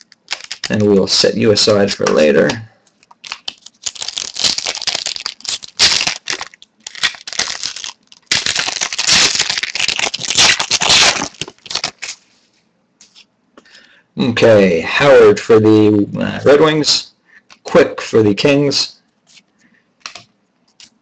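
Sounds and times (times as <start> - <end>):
wrapper being torn and crinkled: 0.0 - 1.0, 3.0 - 12.2.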